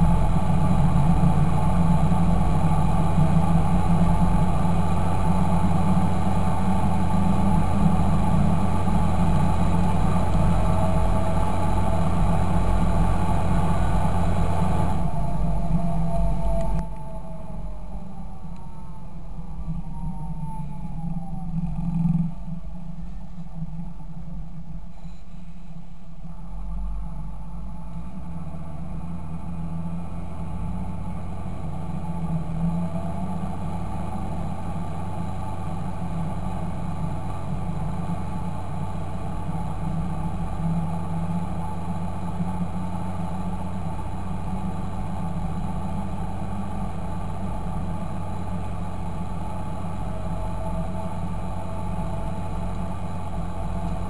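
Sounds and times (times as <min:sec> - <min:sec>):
tractor diesel engine running: 0:00.0 - 0:54.0.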